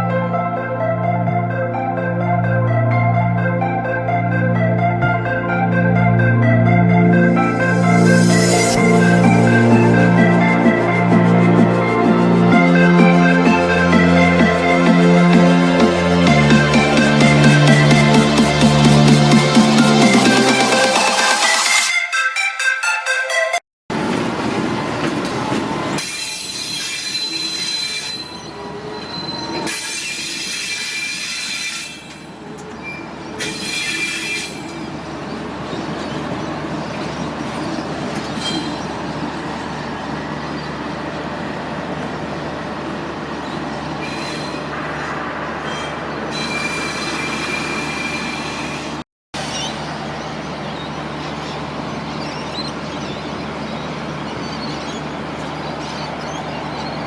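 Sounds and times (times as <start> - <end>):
train rumble: 4.6 - 21.6, 23.9 - 57.0
train wheels squealing: 25.9 - 35.1, 35.7 - 40.7, 43.4 - 49.0.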